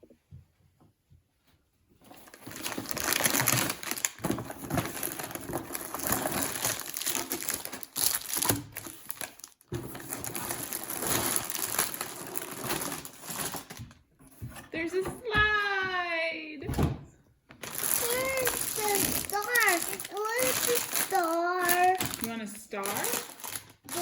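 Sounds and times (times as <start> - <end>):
plastic packaging crinkling: 2.1 - 14.0, 17.6 - 24.0.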